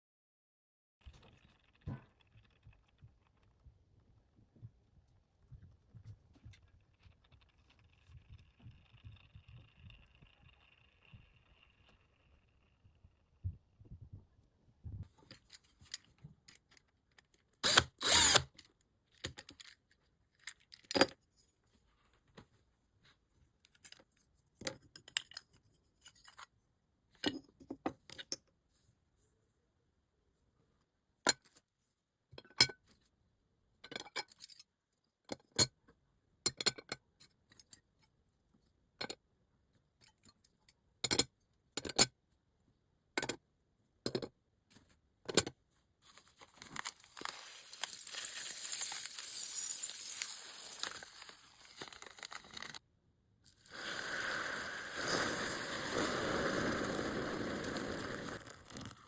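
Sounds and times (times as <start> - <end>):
small metal parts clicking: 46.2 - 52.8.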